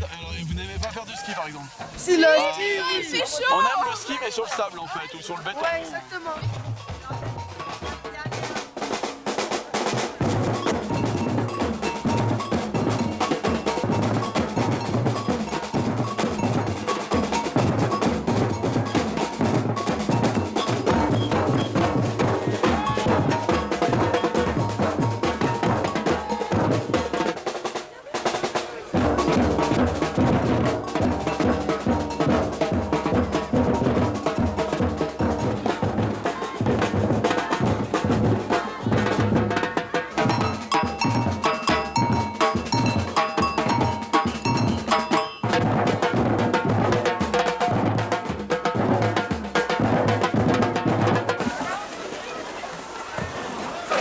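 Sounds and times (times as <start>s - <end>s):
bass drums: 0.0s - 1.2s, 9.8s - 27.4s, 29.0s - 51.6s
bell in samba rhythm: 0.0s - 51.5s
snare drums: 0.0s - 54.0s.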